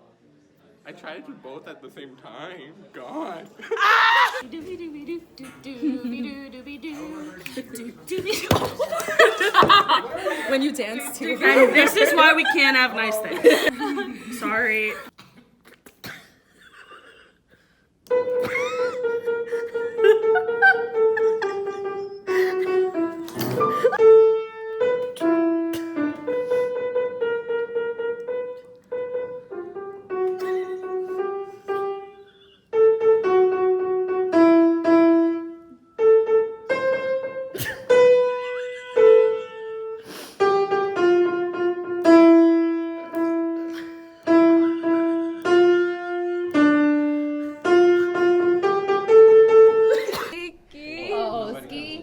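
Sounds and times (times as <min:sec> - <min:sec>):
piano melody: 0:18.1 - 0:50.1.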